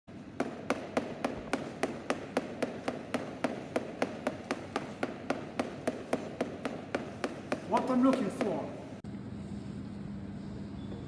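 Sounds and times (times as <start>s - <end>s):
small hammer tapping cheese: 0.4s - 8.8s.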